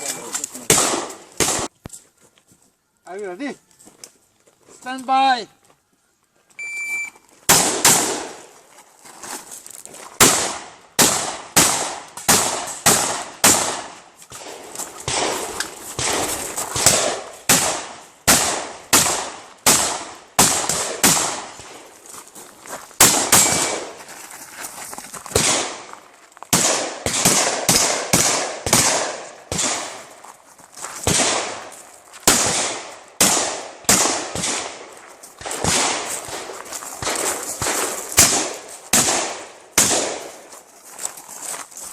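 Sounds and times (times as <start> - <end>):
shotgun shots echoing: 0.0 - 1.7, 7.5 - 8.5, 10.2 - 21.8, 23.0 - 24.0, 25.4 - 25.9, 26.5 - 30.2, 31.0 - 40.5
shot timer beep: 6.6 - 7.2.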